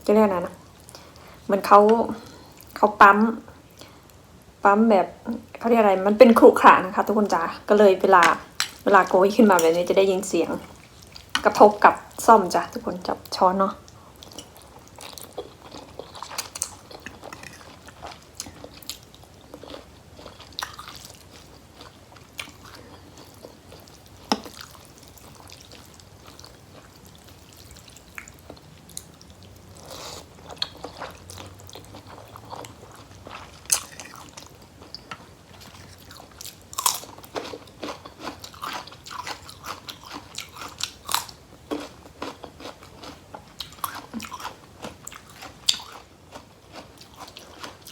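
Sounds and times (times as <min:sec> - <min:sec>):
chewing food: 0:13.8 - 0:47.9.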